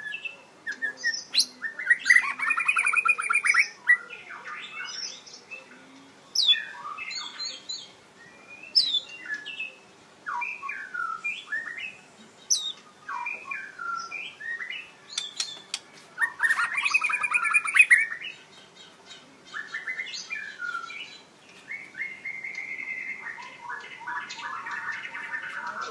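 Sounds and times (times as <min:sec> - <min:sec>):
bird singing whistled phrases: 0:06.4 - 0:18.4, 0:19.5 - 0:25.9.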